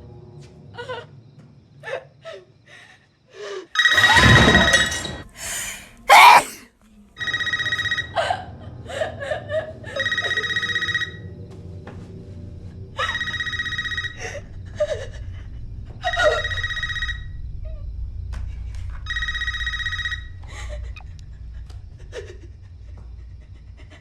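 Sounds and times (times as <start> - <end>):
telephone ringing: 10.0 - 11.2.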